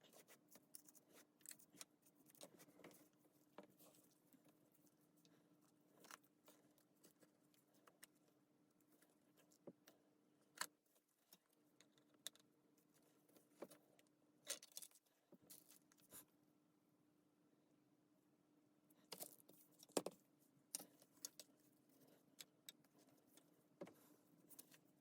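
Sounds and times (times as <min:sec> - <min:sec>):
faint steady hum: 0:00.0 - 0:25.0
small parts and tools clicking: 0:10.5 - 0:12.5, 0:19.1 - 0:21.6.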